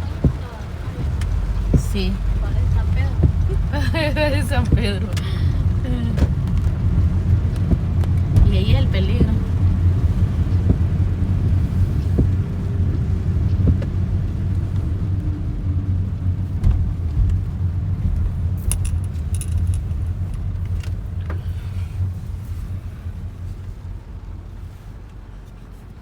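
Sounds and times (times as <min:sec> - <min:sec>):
car road rumble inside cabin: 0:00.0 - 0:26.0
light rattling clicks: 0:18.6 - 0:21.7.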